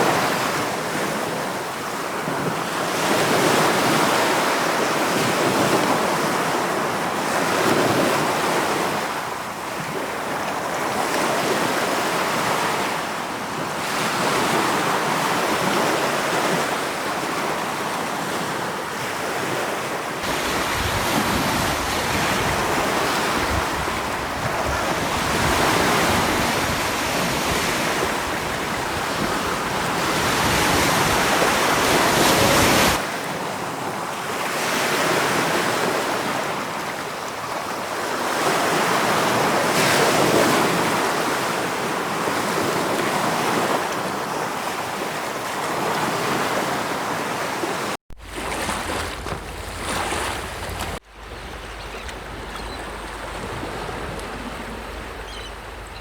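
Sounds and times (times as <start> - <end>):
sea waves breaking on shore: 0.0 - 56.0.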